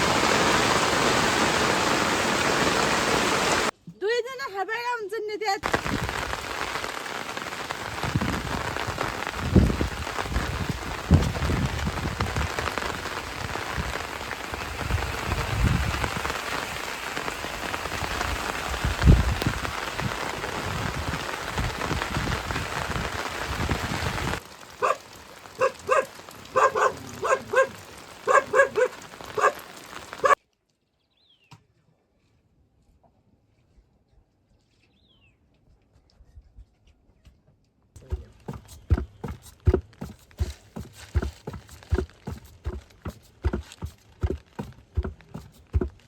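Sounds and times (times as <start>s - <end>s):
heavy rain falling: 0.0s - 3.7s, 5.6s - 30.4s, 38.0s - 46.0s
low thumps: 38.0s - 46.0s.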